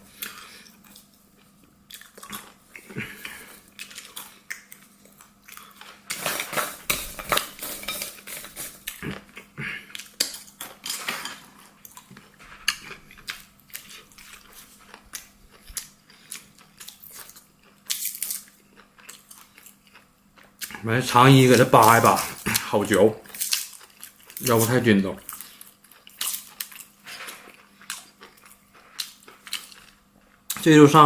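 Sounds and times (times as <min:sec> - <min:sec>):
utensils clinking against plates: 0:06.1 - 0:08.8.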